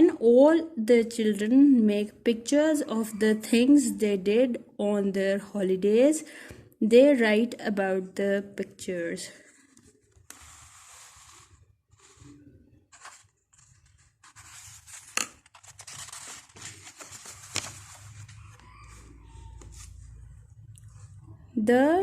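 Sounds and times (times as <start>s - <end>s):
paper rustling: 9.4s - 20.2s.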